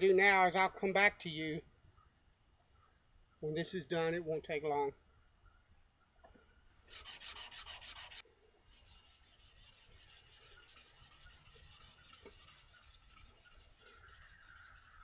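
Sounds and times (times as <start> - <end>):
spokeshave rubbing on sandpaper: 6.9 - 15.0.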